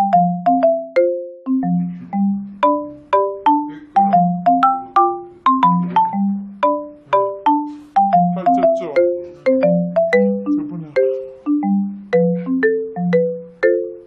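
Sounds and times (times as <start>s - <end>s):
bouncy mallet percussion melody: 0.0s - 14.0s.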